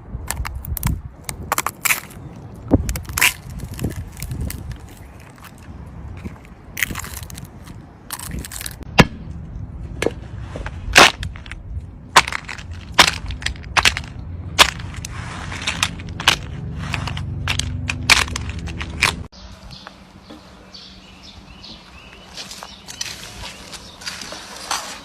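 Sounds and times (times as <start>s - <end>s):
steady low rumble: 0.0s - 19.8s
brittle cracks and crunches: 0.2s - 9.1s, 10.9s - 11.6s, 12.2s - 19.3s.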